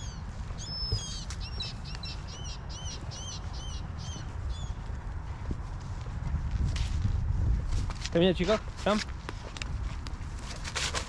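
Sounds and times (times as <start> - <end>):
small bird whistling: 0.0 - 4.7.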